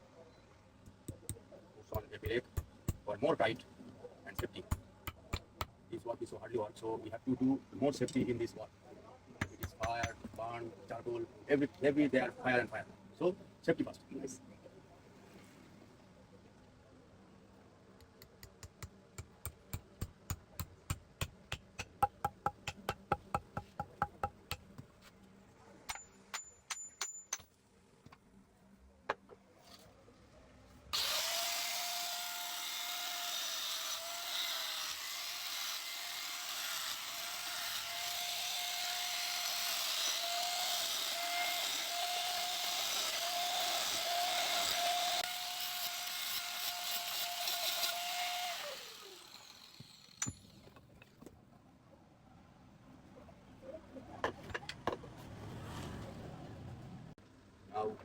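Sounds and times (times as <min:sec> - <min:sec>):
hammer on metal: 0:18.4 - 0:24.6
electric power tool whining: 0:31.0 - 0:50.4.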